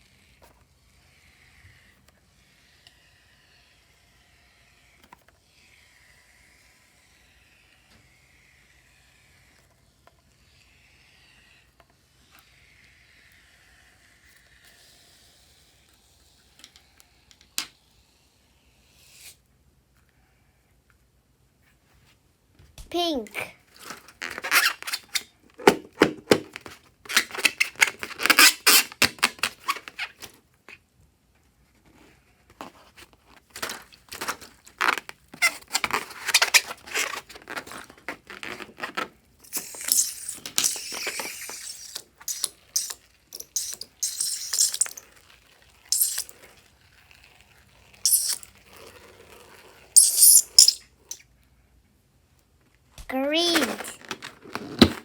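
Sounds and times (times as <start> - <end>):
short bursts of high hiss: 39.4 - 43.0.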